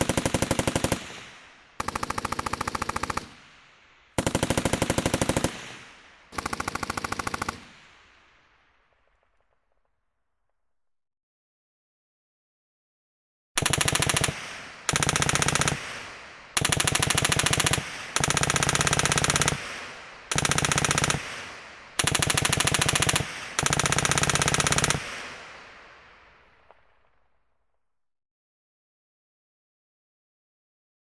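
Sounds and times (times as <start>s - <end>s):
machine gun bursts: 4.2s - 5.7s, 13.6s - 16.0s, 16.6s - 21.4s, 22.0s - 25.2s
gunfire echo: 13.6s - 27.4s.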